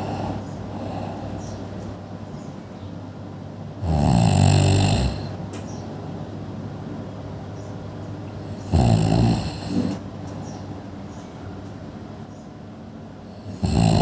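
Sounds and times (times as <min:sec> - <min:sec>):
loud snoring: 0:03.8 - 0:05.4, 0:08.4 - 0:10.0, 0:13.3 - 0:14.0.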